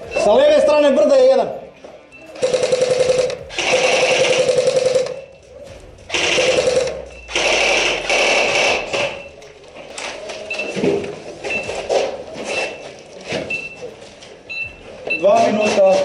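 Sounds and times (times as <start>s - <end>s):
airsoft gun full-auto bursts: 2.4s - 5.4s, 6.1s - 9.2s.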